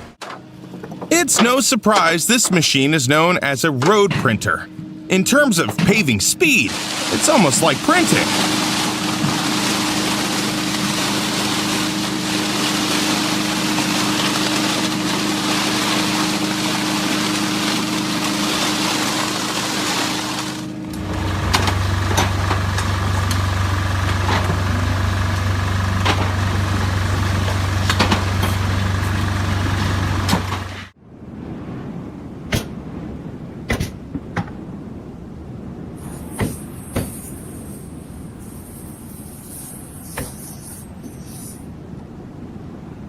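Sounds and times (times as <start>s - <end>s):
construction machinery engine hum: 0.0s - 31.0s, 35.7s - 43.0s
deep machine hum: 2.8s - 30.8s.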